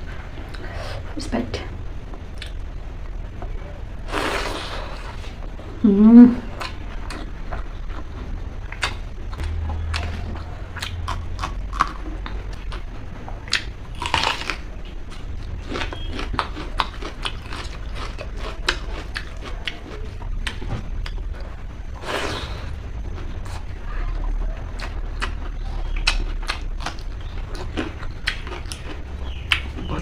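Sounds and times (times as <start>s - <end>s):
loud chewing crunch: 8.7s - 30.0s.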